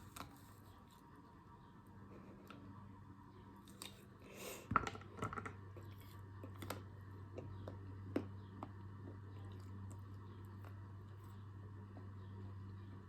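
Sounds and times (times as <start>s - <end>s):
chewing with mouth clicks: 7.4s - 12.1s.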